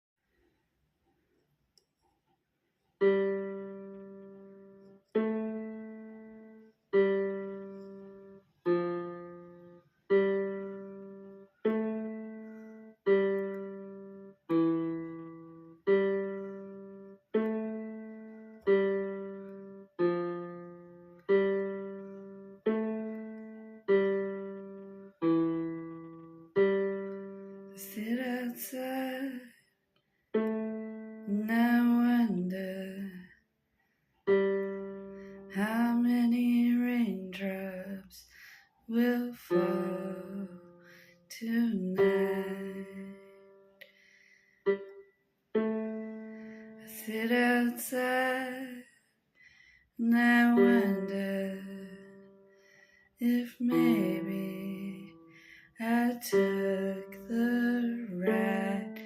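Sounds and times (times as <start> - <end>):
keyboard chords: 3.0 - 28.9, 30.3 - 31.8, 34.2 - 35.8, 39.4 - 41.1, 41.7 - 43.8, 44.7 - 47.0, 50.5 - 52.5, 53.6 - 55.5, 56.2 - 59.0.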